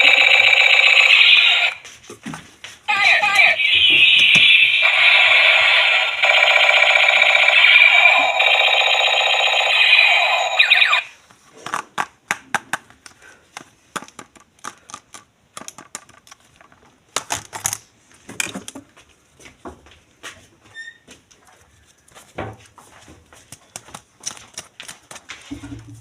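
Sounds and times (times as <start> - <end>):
warbling electronic toy alarm tone: 0.0 - 1.8, 3.6 - 11.1
plastic toys and packaging rustling: 11.1 - 19.2, 21.3 - 25.9.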